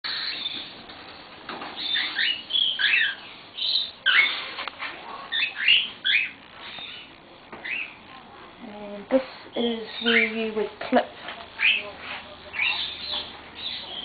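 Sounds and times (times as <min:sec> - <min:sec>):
pet bird calling: 0:01.8 - 0:04.4, 0:05.3 - 0:08.0.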